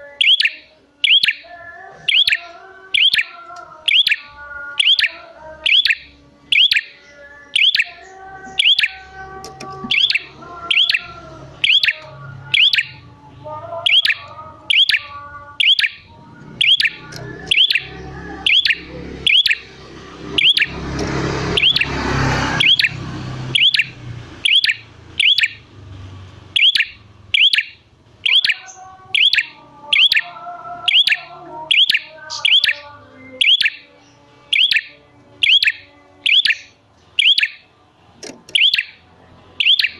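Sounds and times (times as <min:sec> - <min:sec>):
soft low bird chirps: 0:00.1 - 0:09.1.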